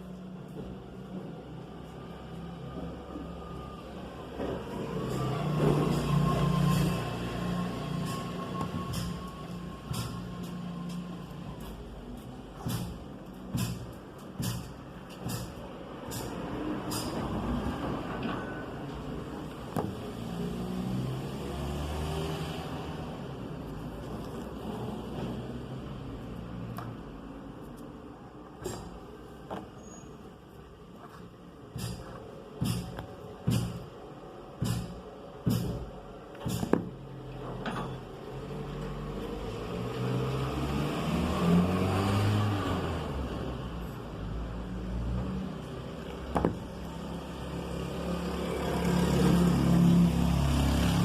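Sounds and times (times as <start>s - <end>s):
vehicle engine rumbling: 0.0s - 51.0s
sharp knocks: 31.7s - 33.9s.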